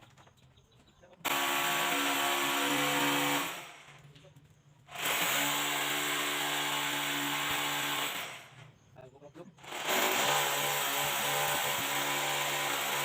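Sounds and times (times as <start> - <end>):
power tool motor running: 1.2 - 4.0, 4.9 - 8.7, 9.6 - 13.0.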